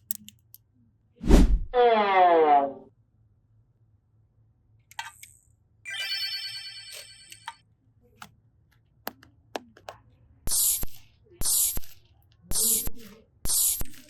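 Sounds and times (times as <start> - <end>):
electronic chime tone: 5.9 - 7.5.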